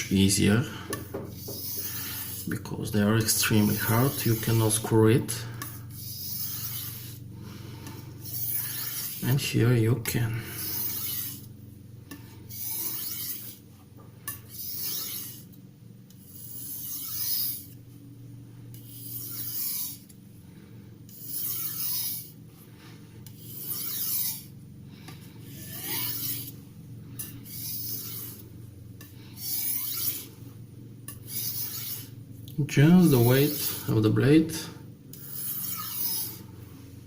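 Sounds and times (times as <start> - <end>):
knife scraping on whetstone: 1.3 - 2.6, 3.2 - 5.0, 5.6 - 7.2, 8.2 - 9.4, 10.6 - 11.5, 12.2 - 13.6, 14.3 - 15.5, 16.2 - 17.8, 18.7 - 20.1, 21.1 - 22.3, 23.3 - 24.5, 25.5 - 26.6, 27.2 - 28.4, 29.4 - 30.3, 31.1 - 33.9, 35.1 - 36.5.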